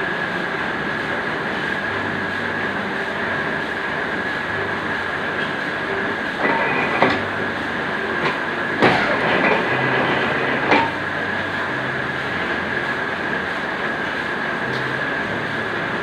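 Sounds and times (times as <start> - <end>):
cutting machine whine: 4.5 - 13.5.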